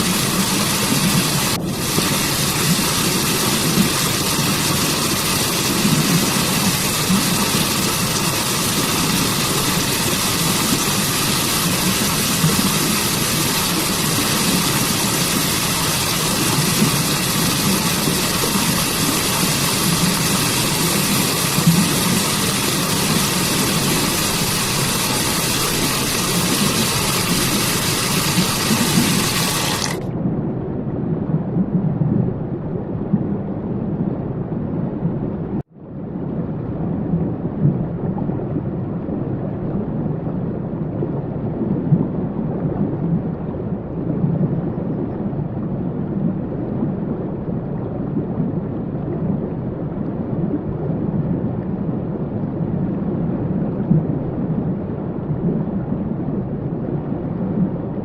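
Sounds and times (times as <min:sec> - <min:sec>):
water rushing: 0:00.0 - 0:30.1.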